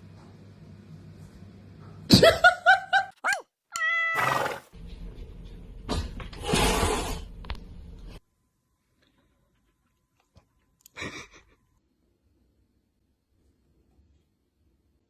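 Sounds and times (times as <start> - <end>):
cat crying: 3.2 - 4.6
cat meowing: 3.3 - 4.6.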